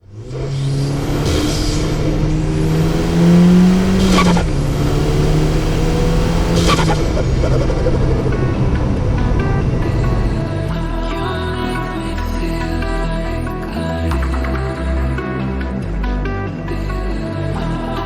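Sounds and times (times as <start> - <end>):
car engine accelerating: 0.0 - 11.7.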